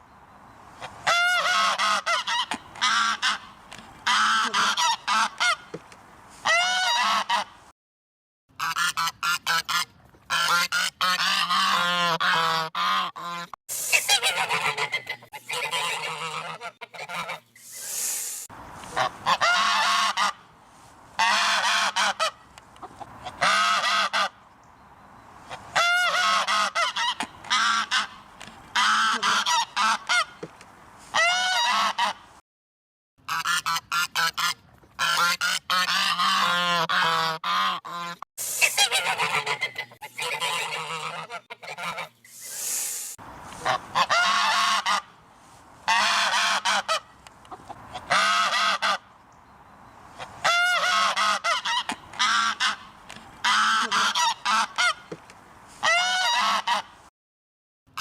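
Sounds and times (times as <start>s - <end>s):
geese honking: 0.8s - 5.7s, 6.4s - 7.5s, 8.6s - 17.6s, 18.8s - 20.5s, 21.2s - 24.4s, 25.5s - 30.4s, 31.1s - 32.2s, 33.3s - 42.2s, 43.6s - 45.2s, 45.8s - 49.1s, 50.2s - 55.1s, 55.8s - 56.9s
brief hiss: 13.7s - 14.7s, 17.6s - 19.0s, 38.4s - 39.4s, 42.2s - 43.7s.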